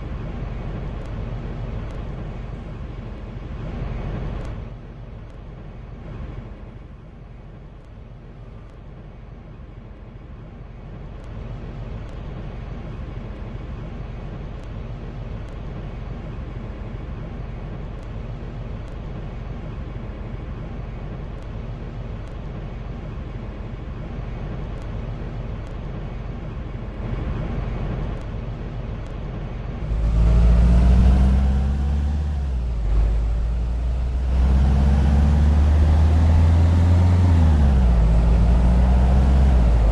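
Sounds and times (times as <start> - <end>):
vehicle engine running: 10.7 - 39.9
heavy vehicle accelerating: 29.7 - 39.9.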